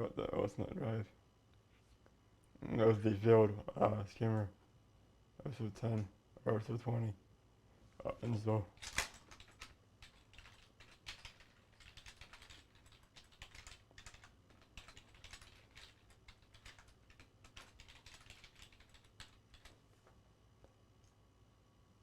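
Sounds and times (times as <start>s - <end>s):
faint keyboard typing: 8.1s - 21.2s.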